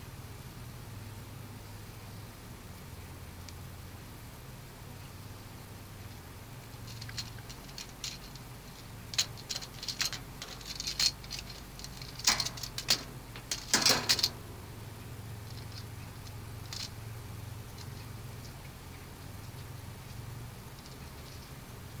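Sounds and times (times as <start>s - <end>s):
toy truck clicking and rattling: 6.8s - 14.4s, 15.4s - 17.0s, 17.7s - 18.0s.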